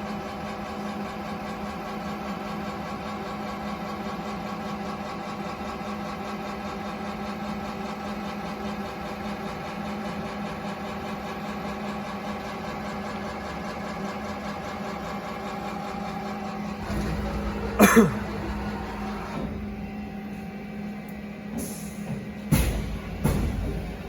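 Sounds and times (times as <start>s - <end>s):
lathe humming and whining: 0.1s - 24.0s.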